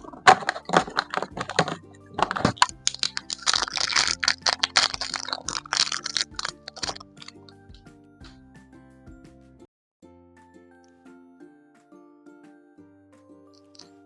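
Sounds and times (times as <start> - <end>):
wrapper crinkling: 0.0 - 7.6
soft background music: 0.0 - 14.0.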